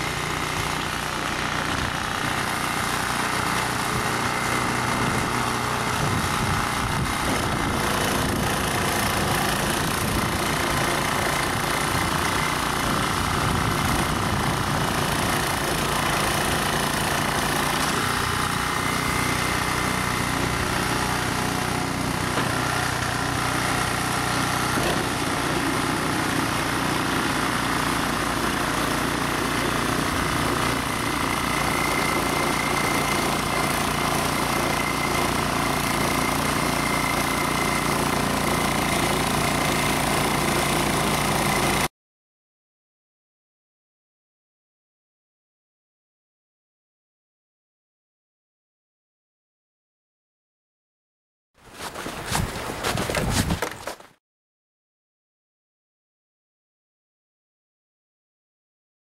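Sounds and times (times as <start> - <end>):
snow blower engine running: 0.0 - 41.9.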